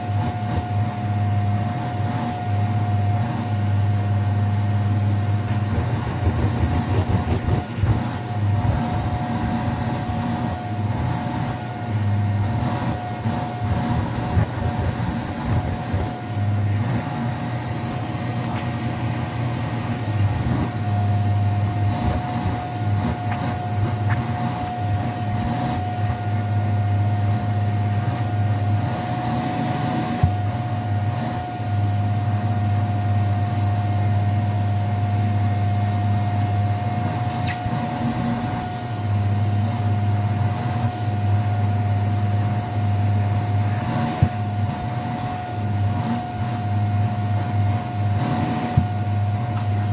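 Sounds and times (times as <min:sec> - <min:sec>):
vacuum cleaner motor whine: 0:00.0 - 0:49.9.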